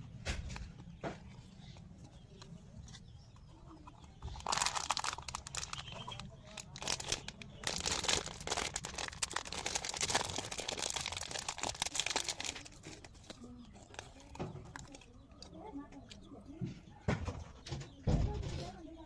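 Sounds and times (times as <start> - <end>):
plastic candy wrapper crinkling: 3.8 - 15.2.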